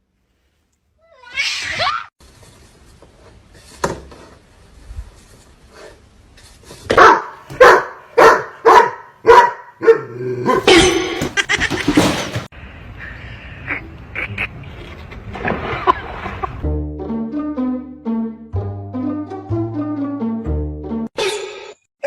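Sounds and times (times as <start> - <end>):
dog barking: 6.9 - 10.9
dog high falling cry: 10.4 - 12.4.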